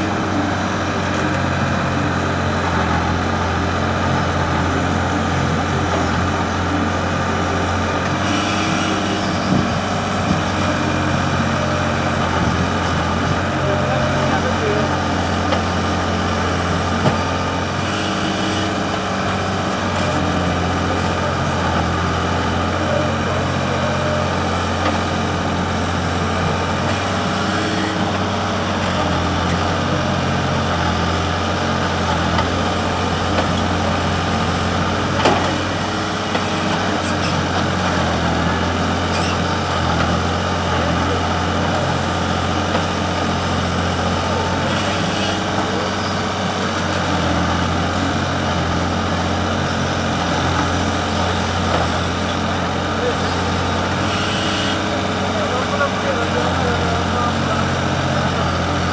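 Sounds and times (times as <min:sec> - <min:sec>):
engine running steadily: 0:00.0 - 0:58.9.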